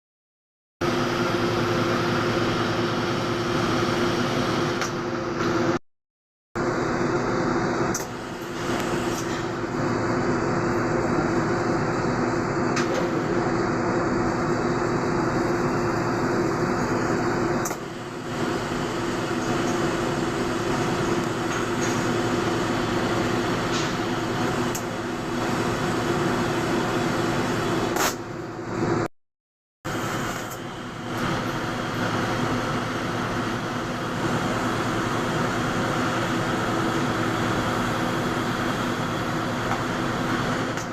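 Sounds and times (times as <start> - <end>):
steady hum: 6.6 - 29.1, 29.9 - 40.9
welding arc hissing buzz: 7.8 - 10.6, 14.4 - 28.2, 29.9 - 40.8.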